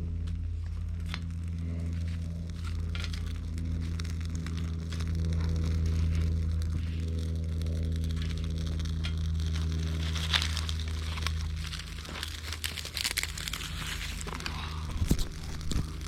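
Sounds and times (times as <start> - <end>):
kindling crackling and snapping: 0.0 - 16.0
low steady hum: 0.0 - 16.0.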